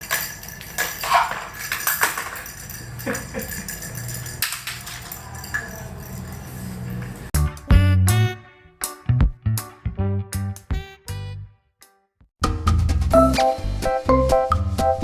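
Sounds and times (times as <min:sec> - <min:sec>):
jingling and light clattering: 0:00.0 - 0:07.4.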